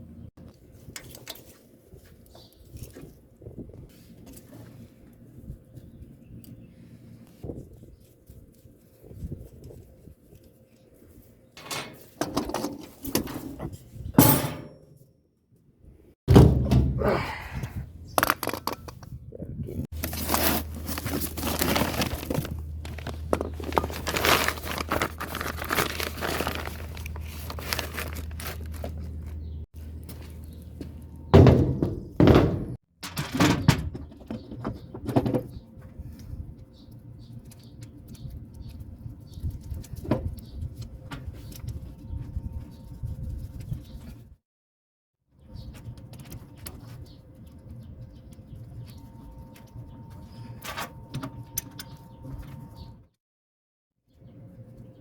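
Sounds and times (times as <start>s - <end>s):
metal knocks and clanks: 11.6s - 15.0s, 16.3s - 17.1s, 31.3s - 35.5s.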